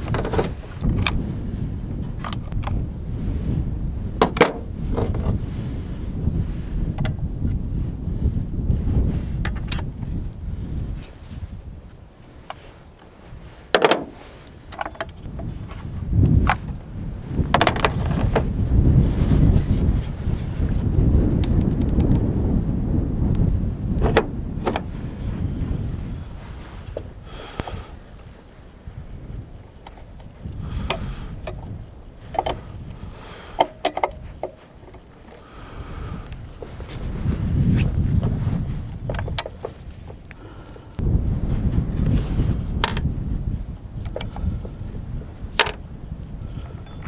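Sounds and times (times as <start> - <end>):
wind rumbling on microphone: 0.0 - 47.0
hand tools clicking and knocking: 13.7 - 15.2, 33.5 - 35.4, 45.6 - 45.8
metal tools clinking: 46.6 - 47.0.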